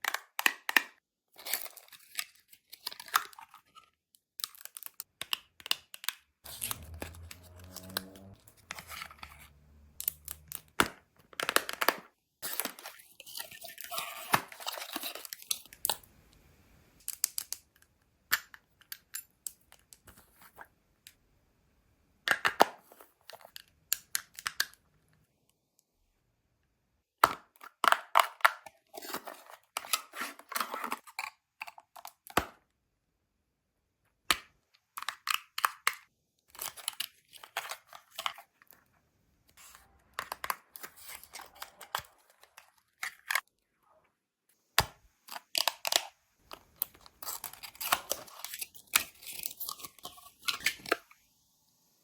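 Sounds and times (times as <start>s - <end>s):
clicks and taps of boxes: 0.0s - 1.0s
wrapping tearing and crinkling: 6.5s - 10.8s, 45.3s - 51.0s.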